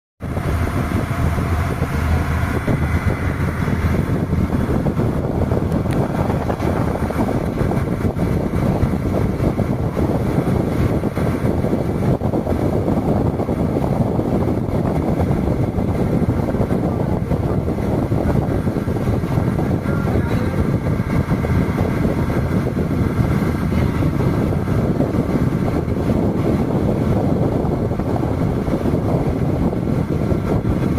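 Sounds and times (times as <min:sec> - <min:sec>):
motorboat engine running: 0:00.2 - 0:30.9
wind buffeting microphone: 0:00.2 - 0:30.9.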